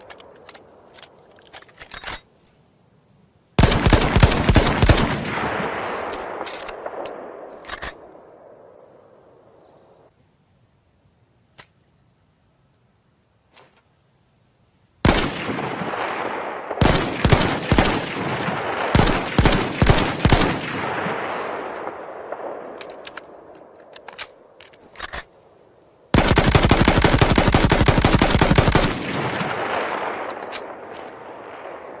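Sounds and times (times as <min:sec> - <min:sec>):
small sharp clicks: 0:00.0 - 0:02.6, 0:11.5 - 0:12.0, 0:22.7 - 0:25.3
rifle rapid-fire burst: 0:03.6 - 0:07.4, 0:15.0 - 0:22.7, 0:26.1 - 0:32.0
rifle shots with echo: 0:03.6 - 0:08.8, 0:15.0 - 0:24.4, 0:26.1 - 0:32.0.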